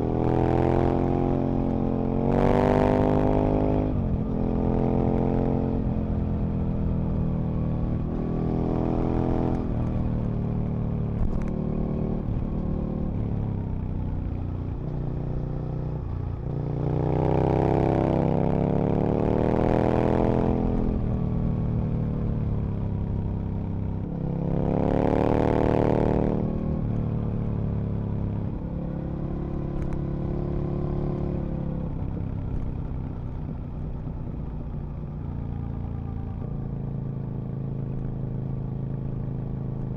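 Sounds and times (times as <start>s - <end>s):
motorcycle engine revving: 24.0s - 27.4s.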